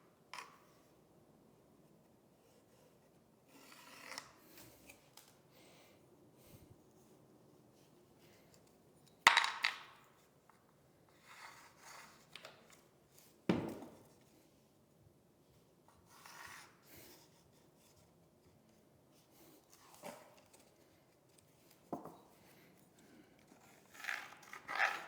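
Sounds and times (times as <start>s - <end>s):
hard knocks of tools and planks: 13.5s - 14.0s.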